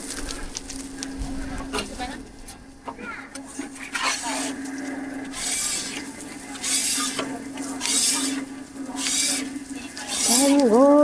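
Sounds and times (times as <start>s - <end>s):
utensil scraping cooking surface: 3.5s - 10.8s.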